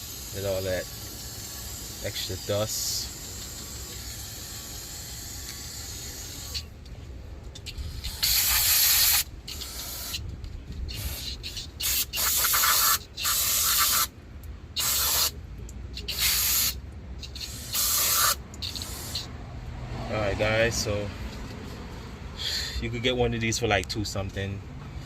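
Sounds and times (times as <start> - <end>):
aerosol spray hissing bursts: 0.0 - 6.7, 7.9 - 10.2, 10.9 - 14.1, 14.8 - 15.4, 16.0 - 19.3.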